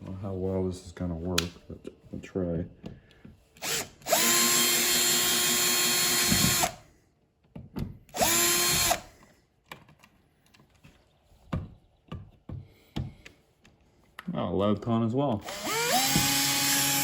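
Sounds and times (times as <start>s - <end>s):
power drill running: 3.6s - 6.8s, 8.1s - 9.1s, 15.4s - 17.0s.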